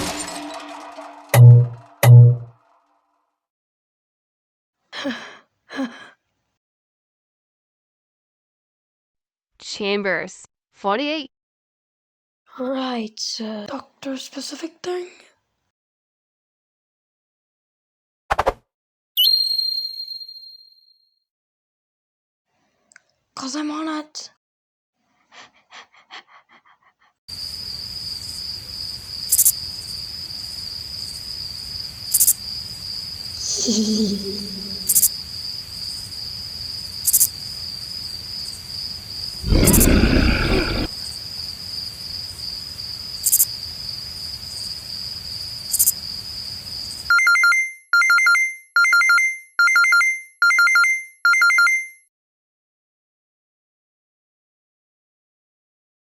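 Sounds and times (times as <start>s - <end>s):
short pitched electronic sound: 0.0s - 2.5s
electronic two-tone beeps: 1.4s - 2.5s, 47.2s - 52.1s.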